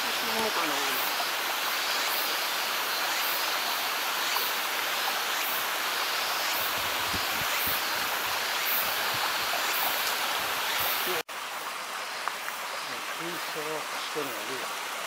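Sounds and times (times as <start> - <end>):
waterfall and stream rushing: 0.0 - 15.0.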